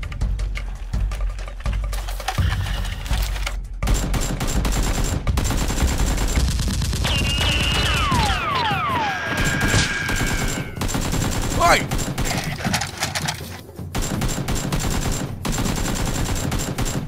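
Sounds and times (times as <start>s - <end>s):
automatic gunfire: 3.8s - 17.0s
falling whistling tones: 7.0s - 10.8s.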